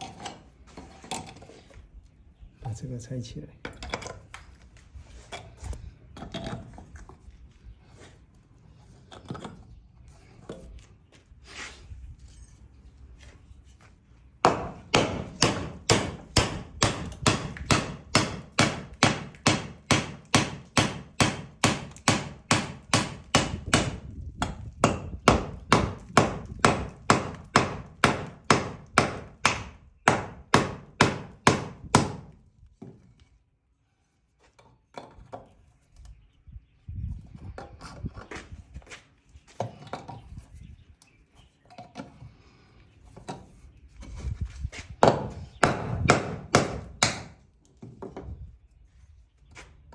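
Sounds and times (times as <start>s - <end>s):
hammer striking wood: 14.4s - 32.3s, 45.0s - 47.4s.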